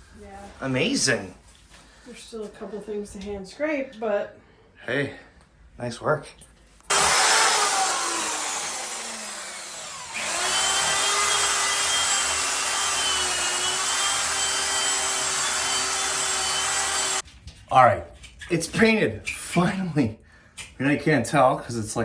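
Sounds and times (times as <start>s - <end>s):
power tool motor whine: 6.9s - 17.2s.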